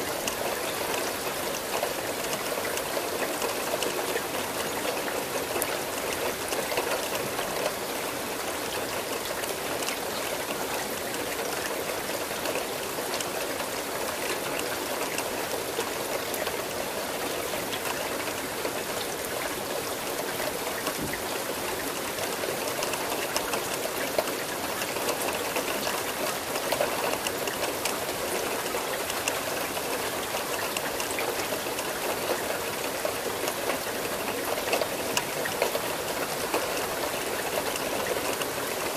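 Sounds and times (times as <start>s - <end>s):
steady rain: 0.0s - 38.9s
trickle of running water: 0.0s - 38.9s.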